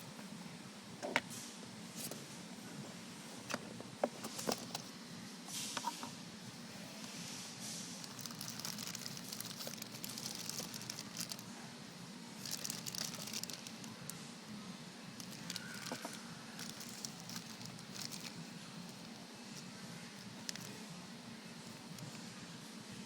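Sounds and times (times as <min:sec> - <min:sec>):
steady low hum: 0:00.0 - 0:23.0
packaging crinkling: 0:08.0 - 0:11.5, 0:12.4 - 0:14.1, 0:15.2 - 0:19.2, 0:20.2 - 0:20.8.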